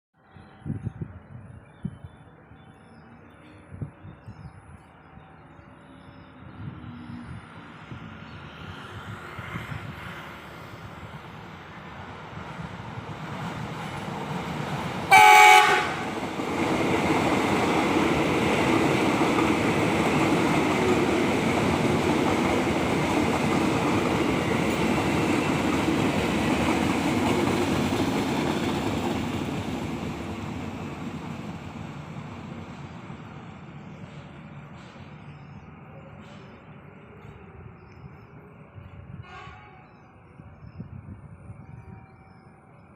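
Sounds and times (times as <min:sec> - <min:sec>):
train wheels on rails: 0:06.7 - 0:39.6
train horn blast: 0:15.1 - 0:16.2, 0:39.1 - 0:40.0.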